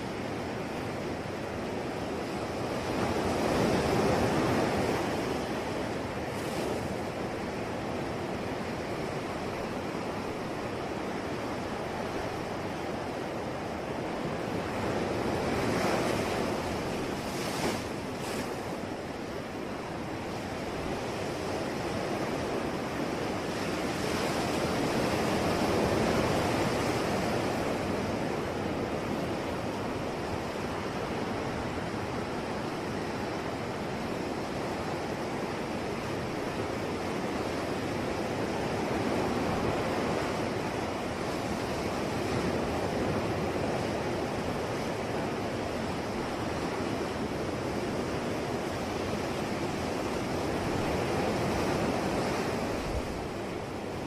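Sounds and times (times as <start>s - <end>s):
sea waves washing onto shore: 0.0s - 54.0s.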